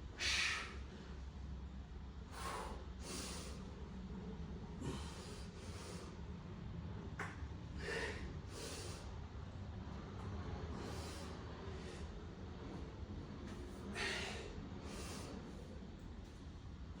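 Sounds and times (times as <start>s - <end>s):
man breathing hard: 0.1s - 1.3s, 2.2s - 3.9s, 4.6s - 6.3s, 7.6s - 9.3s, 10.7s - 12.3s, 13.6s - 15.8s.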